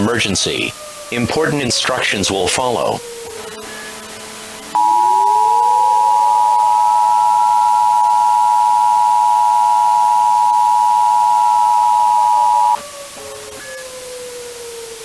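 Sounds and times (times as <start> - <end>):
faint sliding tone: 4.8 - 12.8
two-tone alert beep: 4.8 - 12.8.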